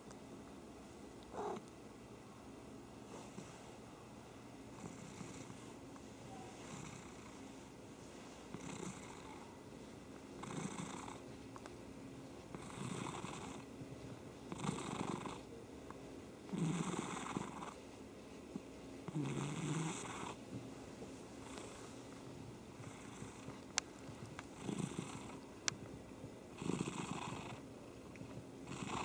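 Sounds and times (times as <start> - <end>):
cat purring: 1.3 - 1.7, 4.7 - 5.7, 6.3 - 7.4, 8.5 - 9.6, 10.4 - 11.3, 12.5 - 13.8, 14.5 - 15.5, 16.5 - 17.8, 19.0 - 20.4, 21.4 - 22.0, 22.7 - 23.6, 24.2 - 25.5, 26.5 - 27.7, 28.6 - 29.0.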